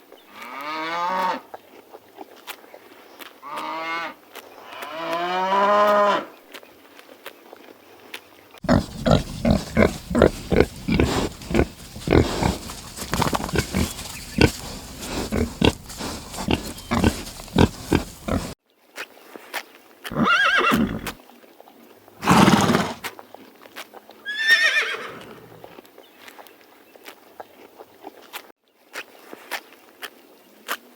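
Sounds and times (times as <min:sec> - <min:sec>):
animal grunting or snorting: 0:08.6 - 0:18.6, 0:20.1 - 0:21.2, 0:22.2 - 0:23.1
wavering animal calls: 0:08.7 - 0:18.6.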